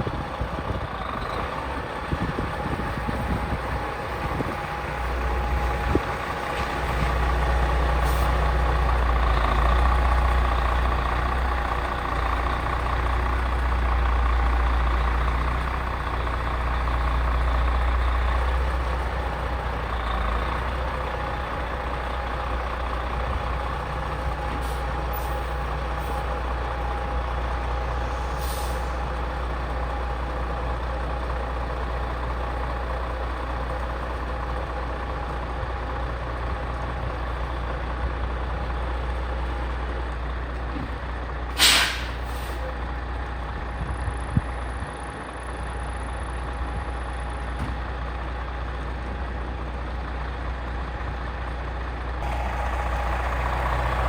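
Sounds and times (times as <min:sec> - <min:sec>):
truck engine idling: 0:00.0 - 0:54.0
air brake hiss: 0:28.2 - 0:29.0, 0:41.5 - 0:42.7.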